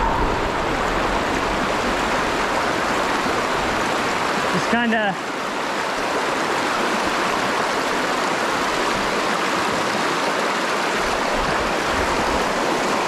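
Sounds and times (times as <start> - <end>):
water rushing over rocks: 0.0 - 13.0.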